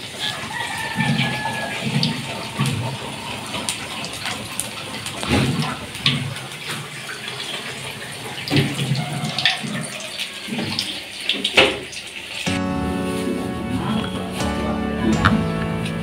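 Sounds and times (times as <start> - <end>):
music: 12.5 - 16.0.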